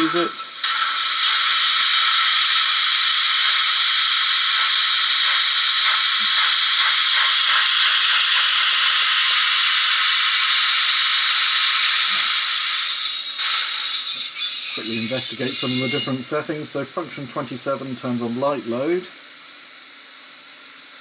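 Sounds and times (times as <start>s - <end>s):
steam hiss from small speaker: 0.0s - 21.0s.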